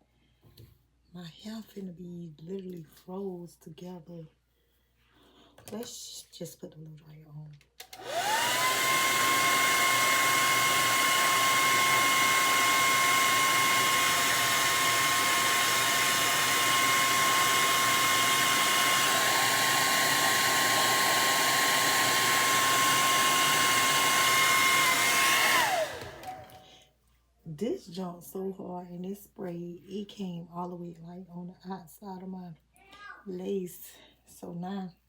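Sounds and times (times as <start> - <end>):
hair dryer running: 7.8 - 26.7.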